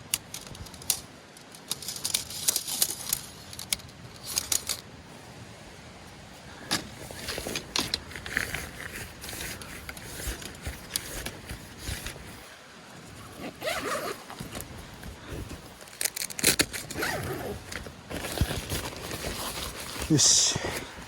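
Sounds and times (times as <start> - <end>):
tent fabric rustling and scraping: 0.3 - 21.0
sharp crinkles: 7.1 - 20.1.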